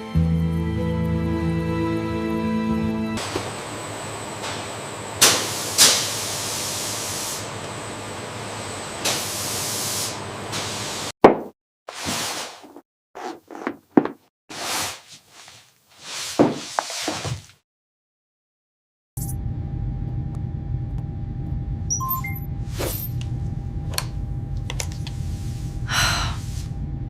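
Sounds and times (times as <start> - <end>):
sharp knocks and thuds: 11.2 - 11.6.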